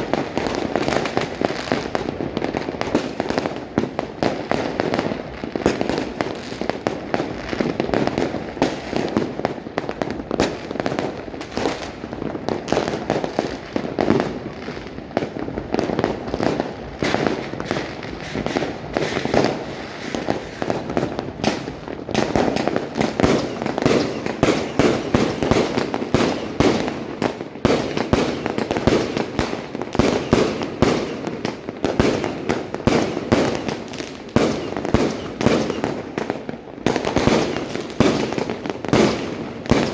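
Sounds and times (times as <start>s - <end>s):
fireworks bangs and pops: 0.0s - 39.9s
distant explosions rumbling: 17.7s - 39.9s.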